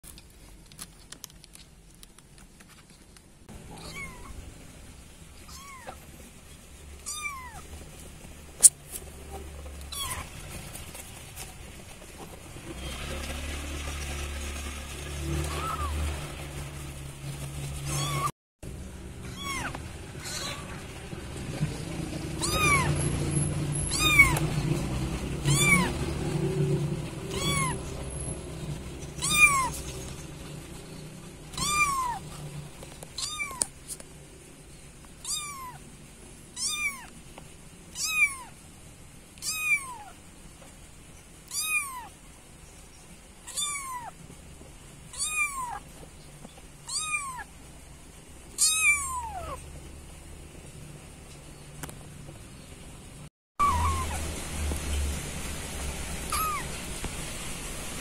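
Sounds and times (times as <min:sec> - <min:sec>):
kitten meowing: 0:03.6 - 0:04.4, 0:05.4 - 0:06.0, 0:07.0 - 0:07.7, 0:09.8 - 0:10.3, 0:15.5 - 0:16.0, 0:17.9 - 0:18.3, 0:19.2 - 0:20.9, 0:22.4 - 0:23.0, 0:23.8 - 0:24.5, 0:25.4 - 0:26.0, 0:27.3 - 0:27.9, 0:29.2 - 0:29.8, 0:31.5 - 0:32.3, 0:33.2 - 0:33.7, 0:35.2 - 0:35.8, 0:36.6 - 0:37.2, 0:37.9 - 0:38.6, 0:39.4 - 0:40.2, 0:41.4 - 0:42.2, 0:43.4 - 0:44.2, 0:45.1 - 0:45.8, 0:46.8 - 0:47.5, 0:48.6 - 0:49.6, 0:53.6 - 0:54.2, 0:56.3 - 0:56.8.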